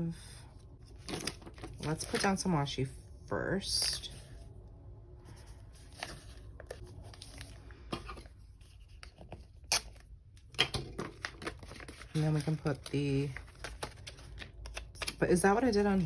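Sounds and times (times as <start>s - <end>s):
rustling of paper and tape: 0.8s - 2.5s, 5.3s - 16.0s.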